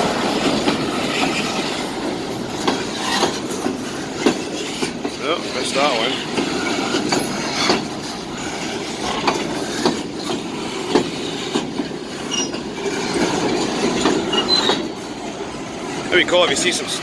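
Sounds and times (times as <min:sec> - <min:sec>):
train wheels knocking over rail joints: 0:00.0 - 0:17.0
high-pitched wheel squeals: 0:12.3 - 0:12.6, 0:14.0 - 0:15.0.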